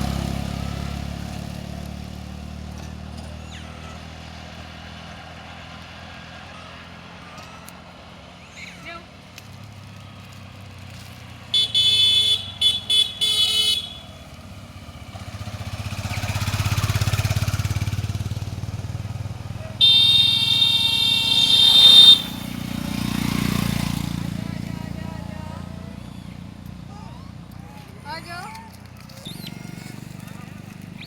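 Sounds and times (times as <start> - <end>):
passing vehicle engine rumble: 0.0 - 31.0
vehicle horn honking: 11.5 - 14.2, 19.7 - 23.1.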